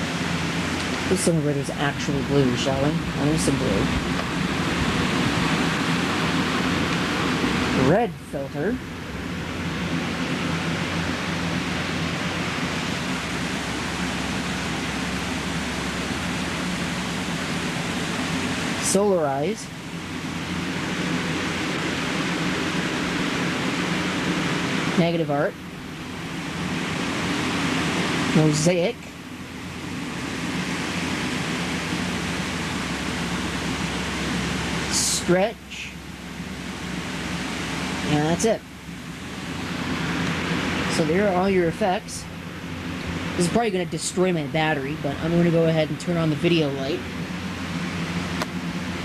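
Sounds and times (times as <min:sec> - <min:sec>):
low hum: 0:00.0 - 0:49.0
steady hiss: 0:00.0 - 0:49.0.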